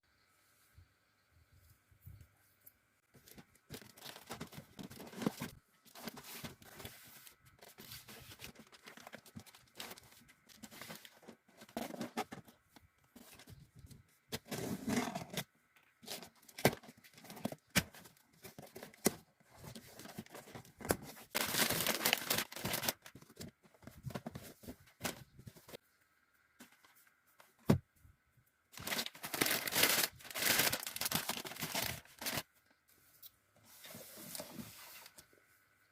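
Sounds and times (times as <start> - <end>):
wrapping rustling and crinkling: 3.1 - 12.6, 16.0 - 25.8, 28.8 - 32.6
packaging tearing: 21.3 - 23.1, 28.8 - 32.4.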